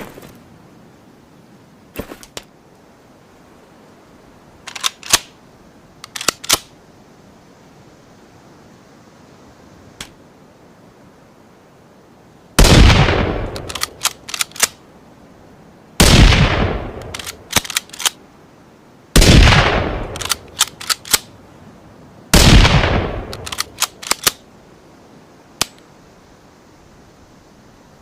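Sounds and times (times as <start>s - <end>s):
rifle bolt clicks: 4.7s - 5.3s, 6.0s - 6.7s, 13.5s - 14.8s, 17.0s - 18.2s, 20.0s - 21.3s, 23.3s - 24.4s
rifle shots with echo: 12.6s - 13.8s, 16.0s - 17.7s, 19.2s - 20.4s, 22.4s - 24.3s.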